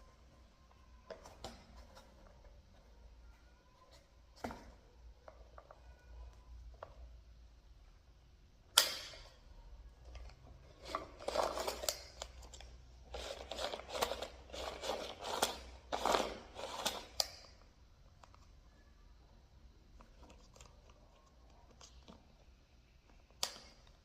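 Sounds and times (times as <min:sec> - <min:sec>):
packaging rustling and crinkling: 0:10.8 - 0:17.2.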